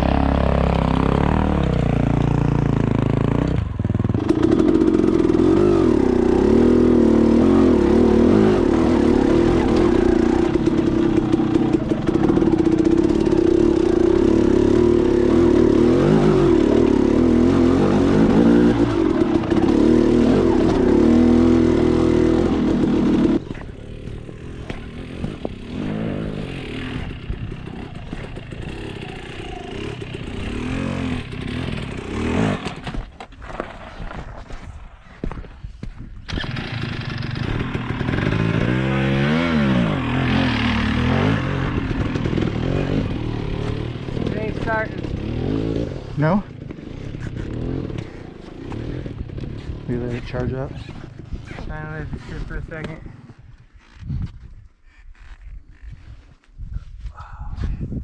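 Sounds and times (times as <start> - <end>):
quiet uneven engine: 0.0 - 33.0, 35.9 - 57.9
dirt bike engine running: 0.0 - 33.4, 35.2 - 56.4.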